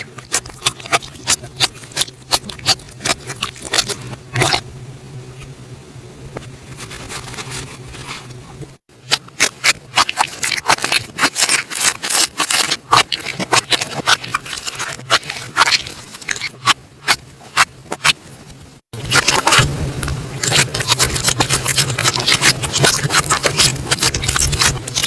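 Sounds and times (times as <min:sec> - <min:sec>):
slime crackling and popping: 0:00.0 - 0:04.6, 0:09.0 - 0:18.2, 0:19.0 - 0:25.0.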